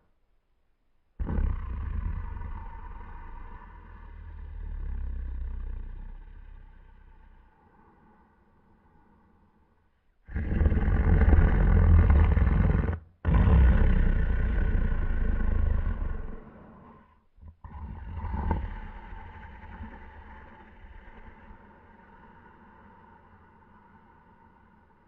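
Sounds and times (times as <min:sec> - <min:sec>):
distorted toy snoring sound: 0:01.2 - 0:07.2, 0:10.3 - 0:21.4.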